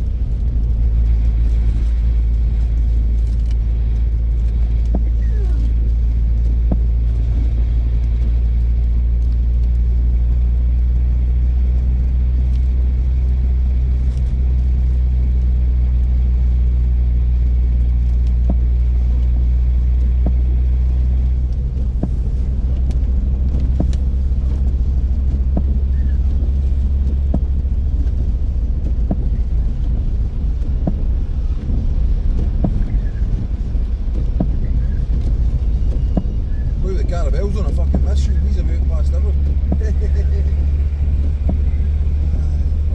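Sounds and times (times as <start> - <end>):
car engine and road drone: 0.0 - 42.9.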